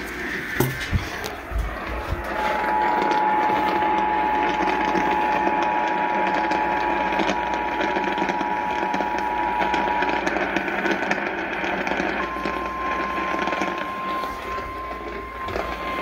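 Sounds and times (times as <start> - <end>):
radio noise hiss: 0.0 - 16.0
two-tone alert signal: 1.8 - 16.0.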